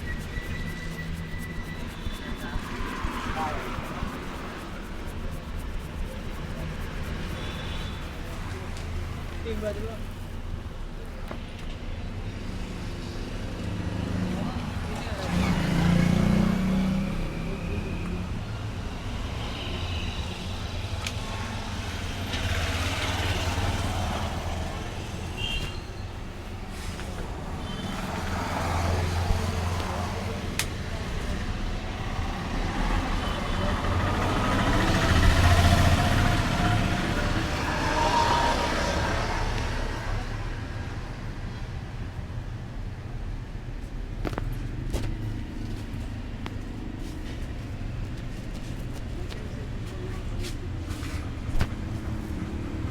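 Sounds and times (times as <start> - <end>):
motor vehicle passing: 0.0 - 11.2, 12.5 - 25.4, 26.1 - 40.8
road traffic rumble: 0.0 - 52.9.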